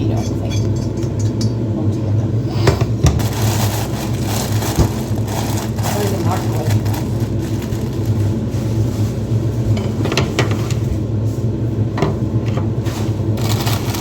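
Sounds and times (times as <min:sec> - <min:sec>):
kitchen appliance humming: 0:00.0 - 0:14.0
dishes knocking and clinking: 0:00.1 - 0:01.6, 0:02.6 - 0:03.3, 0:09.7 - 0:10.8.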